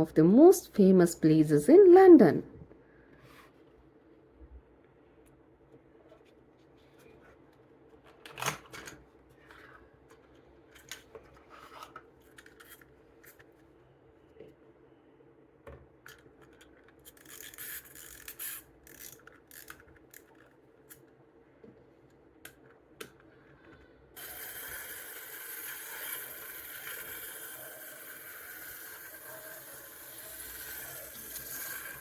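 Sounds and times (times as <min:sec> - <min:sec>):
toy being handled clicks: 0:17.0 - 0:20.5, 0:24.2 - 0:32.0
clockwork motor whirring: 0:24.2 - 0:32.0.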